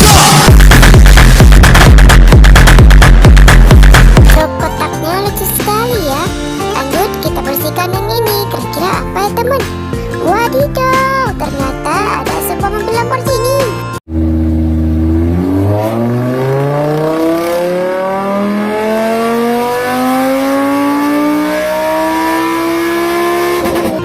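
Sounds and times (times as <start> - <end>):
car engine accelerating: 14.1 - 24.0.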